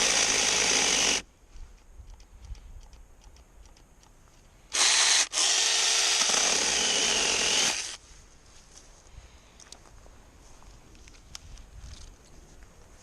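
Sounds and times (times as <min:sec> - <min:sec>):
mini chainsaw running: 0:00.0 - 0:01.2, 0:04.7 - 0:08.0.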